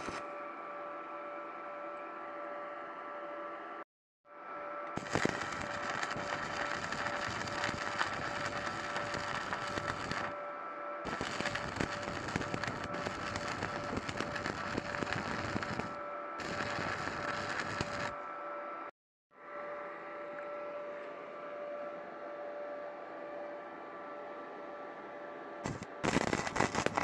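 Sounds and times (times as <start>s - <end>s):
welding arc crackling: 5.0s - 10.4s, 11.1s - 18.2s, 25.6s - 27.0s.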